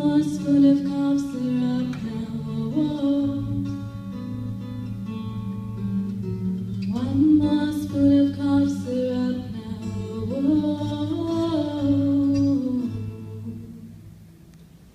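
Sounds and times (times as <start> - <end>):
person singing wordless notes: 0.0 - 4.2, 6.8 - 14.2
acoustic guitar accompaniment: 0.0 - 14.9.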